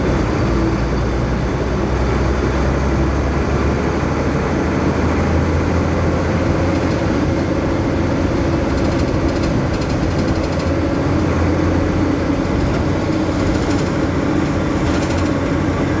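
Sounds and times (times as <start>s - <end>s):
faint high rattle: 8.7s - 15.6s.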